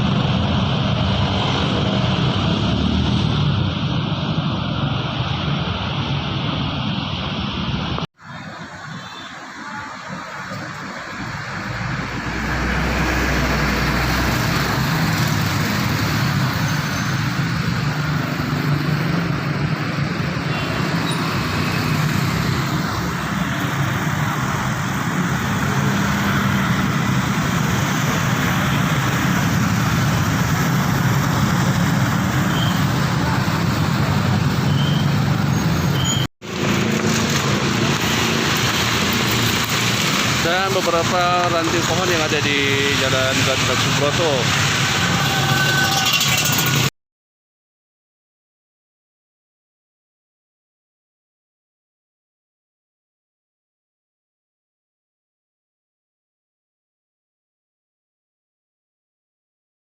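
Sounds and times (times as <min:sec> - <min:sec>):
road traffic noise: 0:00.0 - 0:46.9.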